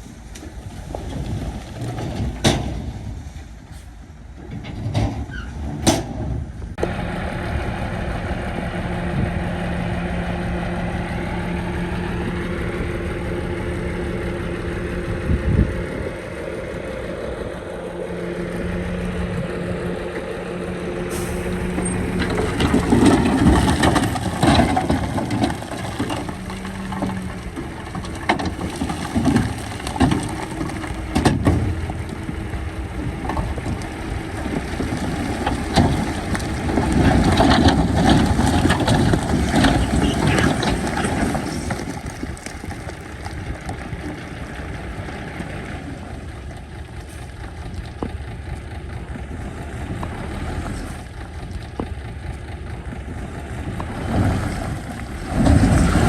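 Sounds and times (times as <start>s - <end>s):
diesel machinery engine hum: 0.0s - 56.0s.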